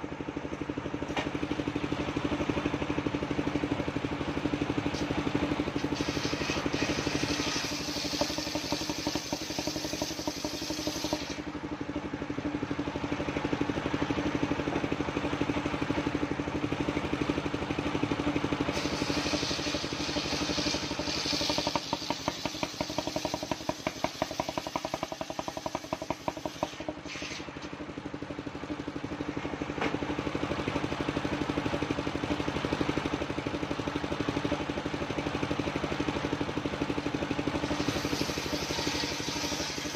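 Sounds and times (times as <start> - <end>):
sawmill engine running: 0.0 - 39.9
saw blade cutting wood: 4.9 - 11.4, 18.7 - 27.7, 37.6 - 39.9.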